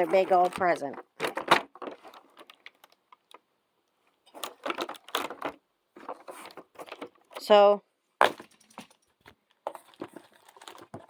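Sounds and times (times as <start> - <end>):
packaging being handled: 0.0 - 3.4, 4.3 - 7.4, 8.3 - 11.0
plastic toys clicking and tapping: 4.3 - 7.6.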